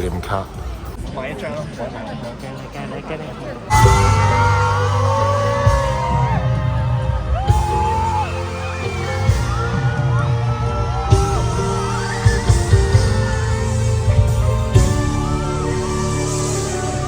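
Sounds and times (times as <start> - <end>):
fans screaming and whooping: 3.7 - 17.0
pop song over arena speakers: 3.7 - 17.0.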